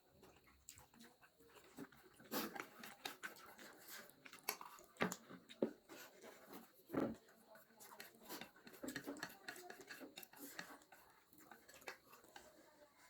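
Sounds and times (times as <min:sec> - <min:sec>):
chewing and mouth smacks: 0:00.2 - 0:05.7, 0:07.9 - 0:12.4.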